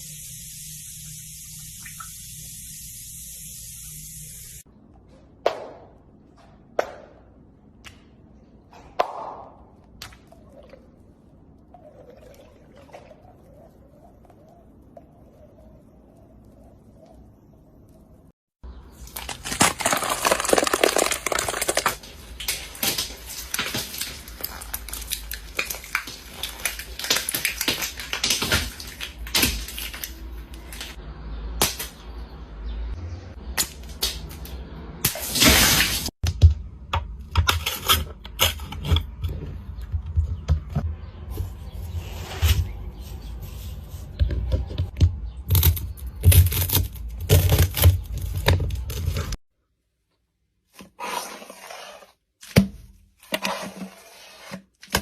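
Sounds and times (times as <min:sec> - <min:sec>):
small hard objects clicking and scraping: 0:19.0 - 0:31.0.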